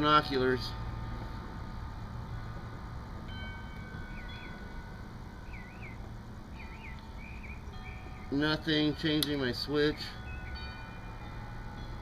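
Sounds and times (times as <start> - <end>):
low outdoor rumble: 0.0 - 12.0
bird whistling calls: 5.4 - 8.3.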